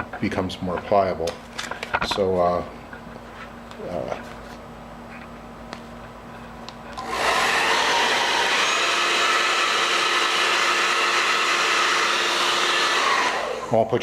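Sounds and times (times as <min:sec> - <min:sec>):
hair dryer blowing: 0:07.0 - 0:14.0.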